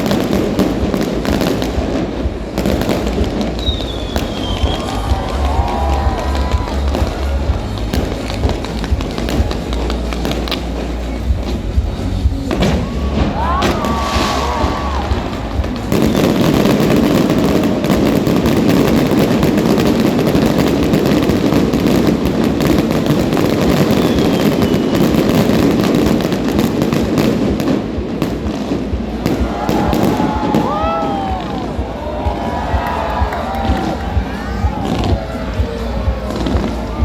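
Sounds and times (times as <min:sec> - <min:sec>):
dense rapid firework crackling: 0:00.0 - 0:37.0
fireworks going off: 0:00.0 - 0:37.0.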